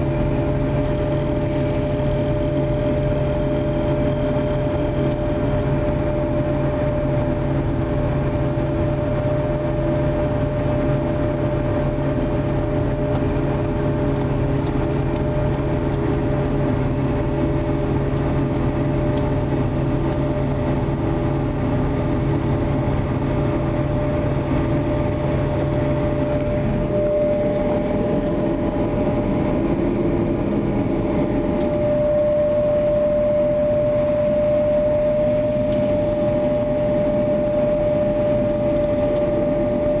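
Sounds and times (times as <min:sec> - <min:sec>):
engine drone: 0:00.0 - 0:40.0
high machine whine: 0:00.0 - 0:40.0.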